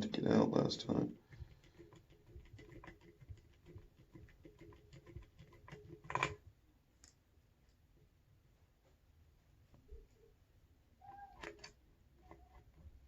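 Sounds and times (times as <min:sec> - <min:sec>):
allen key clicking and scraping: 0:01.3 - 0:06.4, 0:11.3 - 0:12.8.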